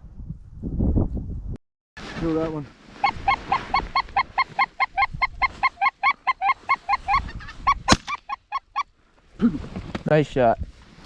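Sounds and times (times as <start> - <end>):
geese honking: 3.0 - 8.8
shotgun shot: 7.9 - 8.2.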